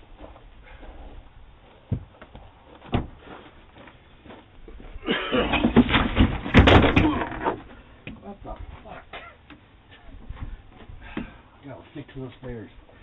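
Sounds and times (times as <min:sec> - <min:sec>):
thuds of man falling: 0:05.4 - 0:07.6
thumps and clatter: 0:05.4 - 0:07.8.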